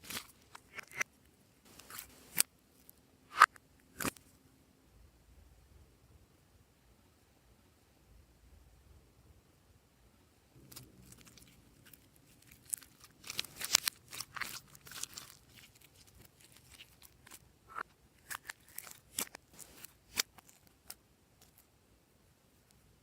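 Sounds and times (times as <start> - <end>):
slime crackling and popping: 10.6 - 17.4, 18.2 - 21.6.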